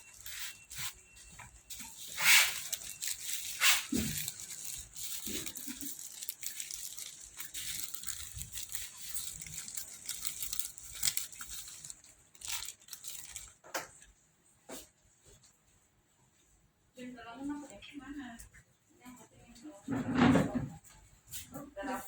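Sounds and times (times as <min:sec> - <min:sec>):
plastic packaging crinkling: 0:00.0 - 0:14.1.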